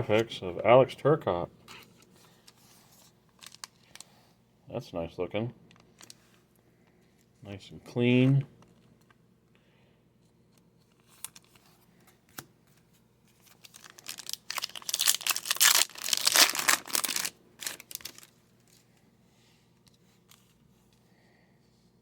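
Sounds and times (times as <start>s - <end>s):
foil wrapper tearing and crinkling: 3.4s - 4.1s, 13.4s - 18.3s.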